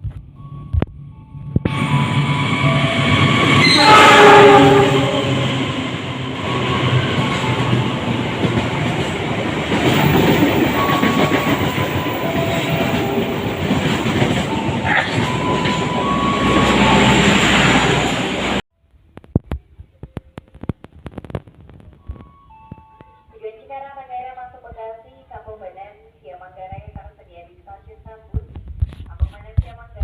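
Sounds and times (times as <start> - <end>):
train rumble and wheel noise: 0.0 - 18.6.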